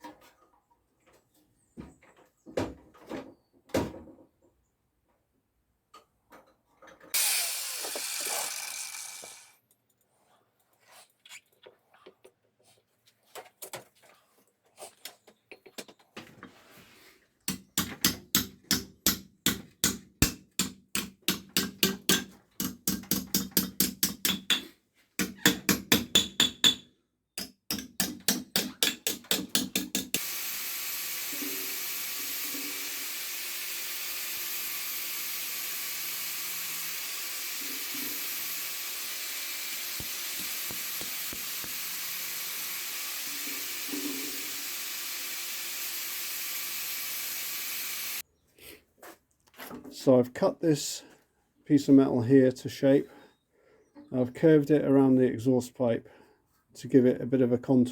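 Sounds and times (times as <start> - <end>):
loud rasping noise: 7.2 - 9.5
hammer striking metal: 25.2 - 26.8, 27.4 - 30.2.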